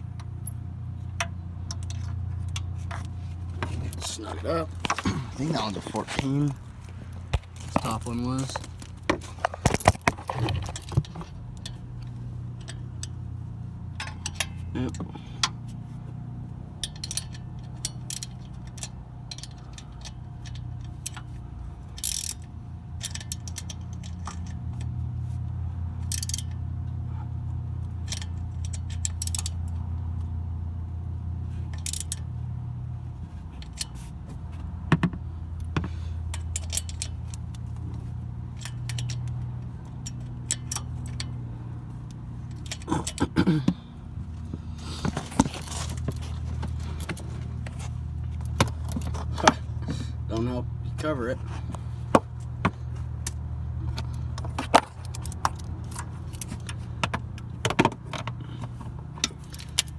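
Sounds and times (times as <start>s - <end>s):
steady low hum: 0.0s - 59.9s
metal tools clinking and scraping: 1.2s - 13.2s, 36.0s - 43.6s, 44.4s - 59.9s.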